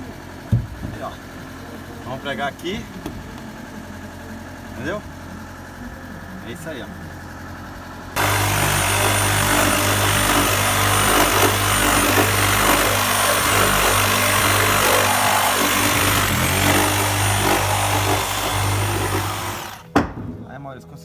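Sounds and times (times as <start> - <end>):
power saw cutting wood: 8.2 - 20.0.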